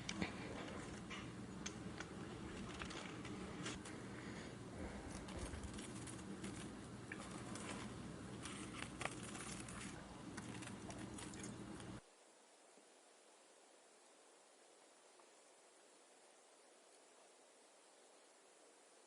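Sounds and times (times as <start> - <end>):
small clicks and rustles: 0.0 - 4.0, 5.1 - 12.0
low steady hum: 0.0 - 19.0.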